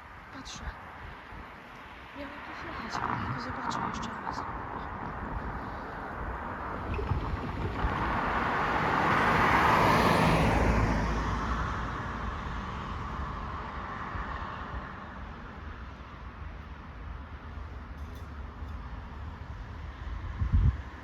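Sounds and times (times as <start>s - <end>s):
car passing by: 1.8s - 15.9s.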